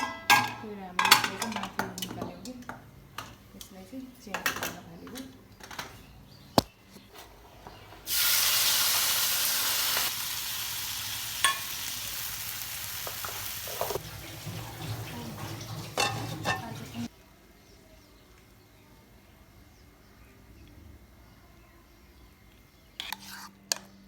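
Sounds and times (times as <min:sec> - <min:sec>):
tomatoes sizzling in hot oil: 0:08.1 - 0:17.1.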